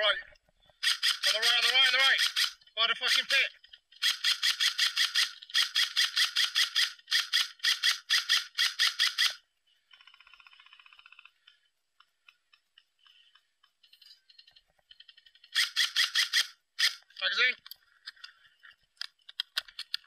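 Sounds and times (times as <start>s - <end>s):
airsoft gun full-auto bursts: 0.8s - 3.4s, 4.0s - 9.4s, 15.5s - 17.0s.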